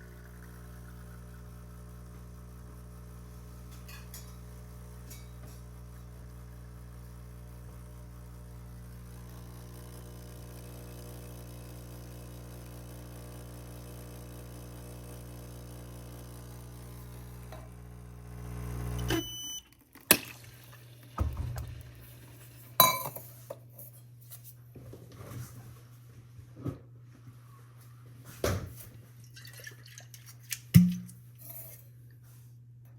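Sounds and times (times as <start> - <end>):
kitchen appliance motor humming: 0.0 - 3.7, 4.6 - 19.6
short beep: 19.1 - 19.7
dishes clinking: 22.8 - 23.4.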